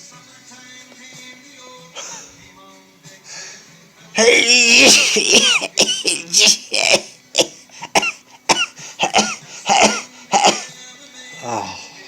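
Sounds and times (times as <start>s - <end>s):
man sneezing: 4.2s - 10.7s.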